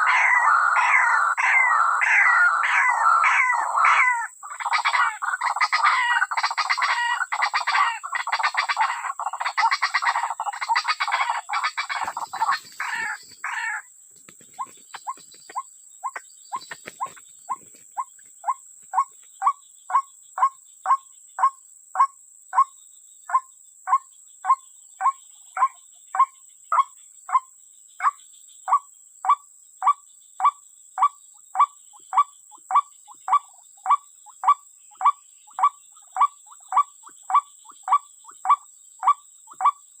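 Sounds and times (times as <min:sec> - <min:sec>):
animal fast chattering: 0:04.1 - 0:13.8.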